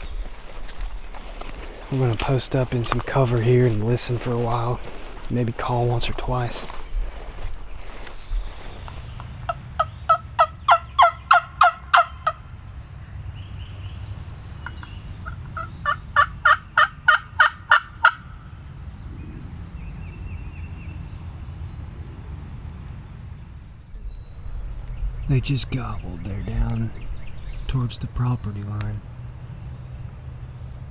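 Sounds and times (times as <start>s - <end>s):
turkey call yelps: 9.8s - 12.4s, 14.7s - 18.3s.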